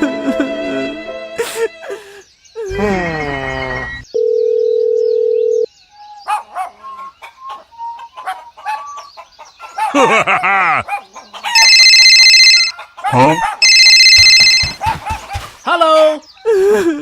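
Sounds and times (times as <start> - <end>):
steady electronic beep: 13.6 - 14.8.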